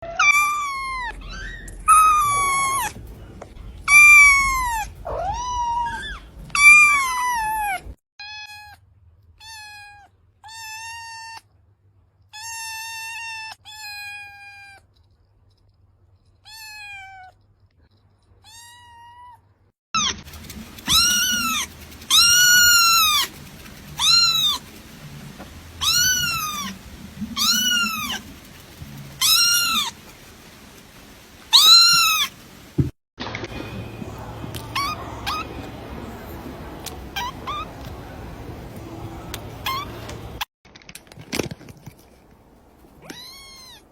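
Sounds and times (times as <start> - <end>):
kitten meowing: 0.0 - 3.0, 3.9 - 8.8, 9.4 - 11.4, 20.9 - 24.6, 25.8 - 26.8, 27.4 - 28.2, 29.2 - 30.0, 31.5 - 32.3, 37.2 - 37.7, 39.6 - 39.9, 43.0 - 43.9.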